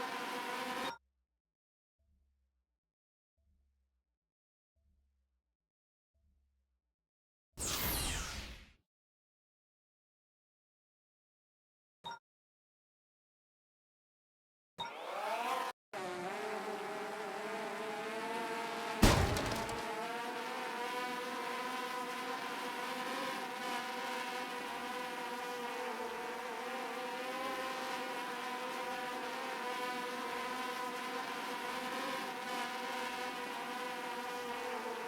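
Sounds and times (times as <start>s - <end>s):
drone motors whining: 19.0s - 19.9s
sharp thump: 19.0s - 20.0s.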